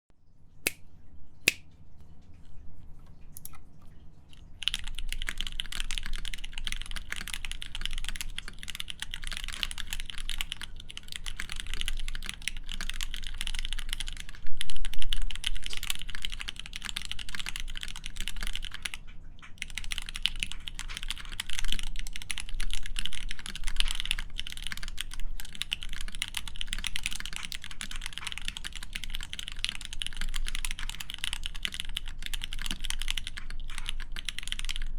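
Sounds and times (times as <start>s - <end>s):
typing on mechanical keyboard: 3.4s - 34.9s.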